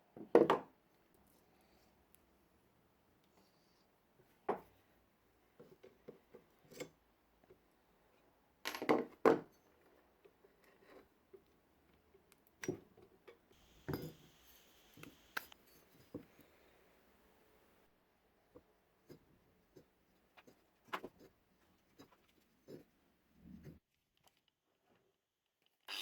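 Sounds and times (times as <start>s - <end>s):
tools clinking on a workbench: 13.8s - 14.3s.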